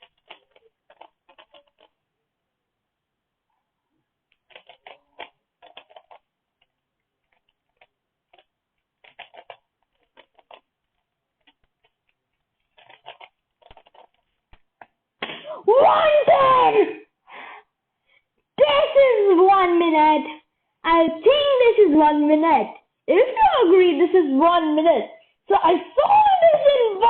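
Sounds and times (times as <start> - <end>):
plastic puzzle cube clicking: 0.0 - 2.0, 4.3 - 15.0.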